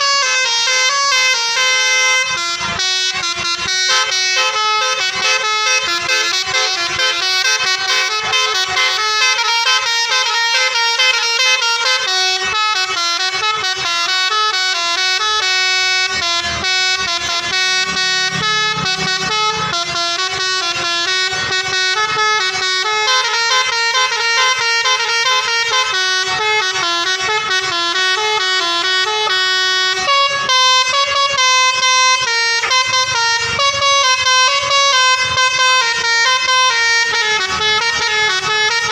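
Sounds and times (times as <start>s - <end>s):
bus multi-tone horn melody: 0.0s - 38.9s.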